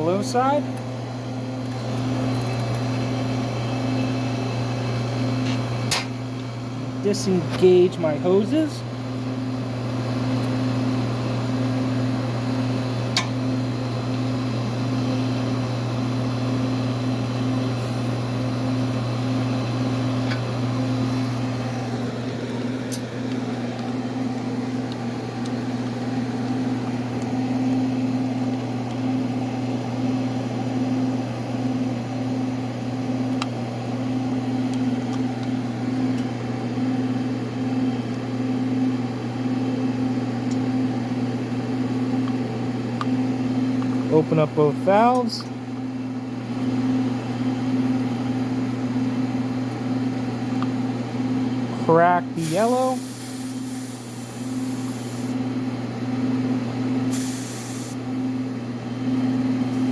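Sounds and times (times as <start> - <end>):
air conditioner compressor hum: 0.0 - 59.9.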